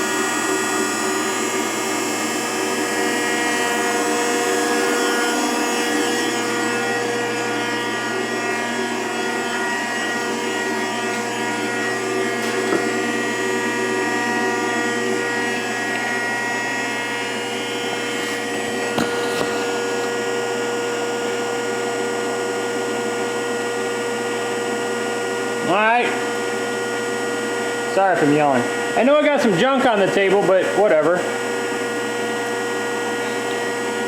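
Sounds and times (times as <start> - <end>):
hydraulic pump whining: 0.0 - 34.0.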